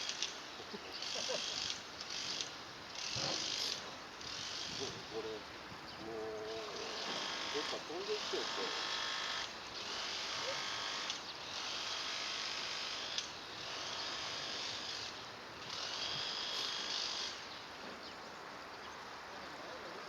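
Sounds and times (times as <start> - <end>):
small electric motor whirring: 1.0 - 5.4, 6.5 - 17.4.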